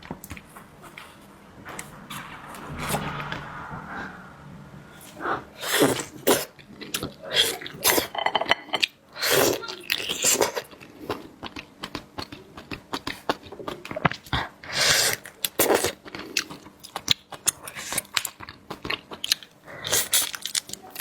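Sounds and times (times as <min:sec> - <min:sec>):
slurping oysters: 0:05.0 - 0:11.3, 0:17.4 - 0:21.0.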